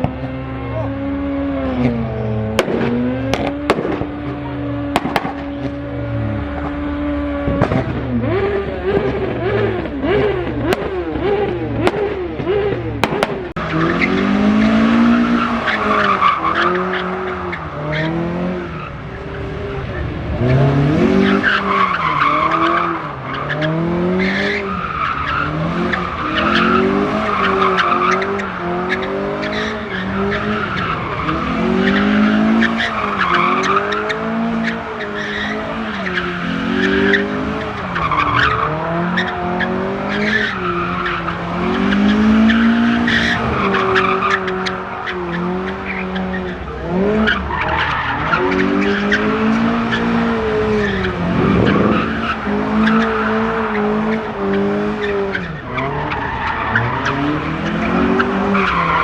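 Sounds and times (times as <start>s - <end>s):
car engine revving: 0.0s - 59.0s.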